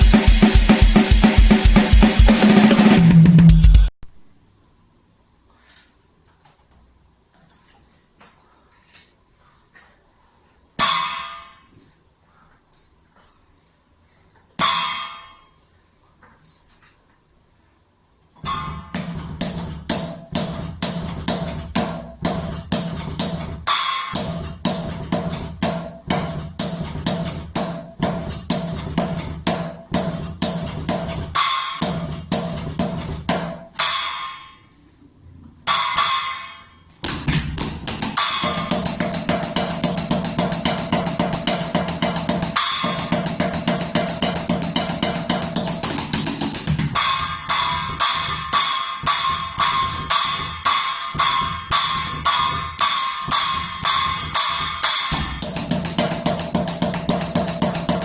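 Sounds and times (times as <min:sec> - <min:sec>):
electronic drum beat: 0:00.0 - 0:03.9, 0:18.5 - 0:33.7, 0:37.1 - 0:58.0
crash cymbal hits ringing: 0:18.4 - 0:19.3, 0:38.1 - 0:45.6, 0:46.7 - 0:58.0.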